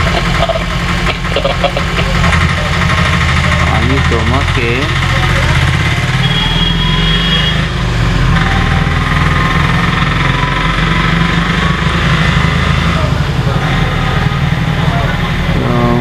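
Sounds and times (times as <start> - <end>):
traffic engines rumbling: 0.0 - 16.0.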